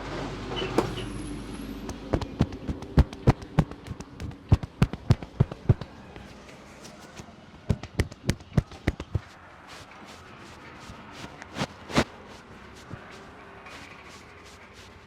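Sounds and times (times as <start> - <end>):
hands clapping on scalp: 1.9 - 5.9.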